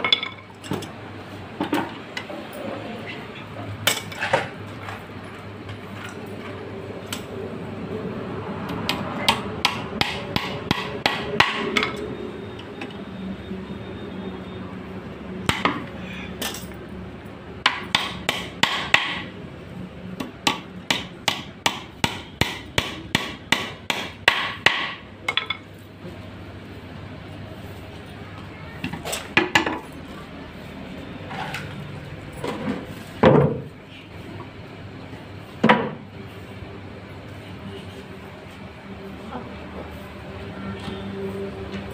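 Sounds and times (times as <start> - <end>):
hammer striking wood: 9.3 - 12.0, 15.5 - 15.8, 17.6 - 19.3, 20.2 - 25.0.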